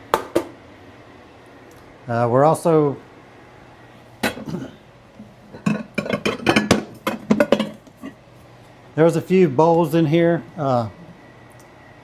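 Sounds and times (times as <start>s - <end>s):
ceramic bowls clinking and knocking: 5.5s - 8.2s.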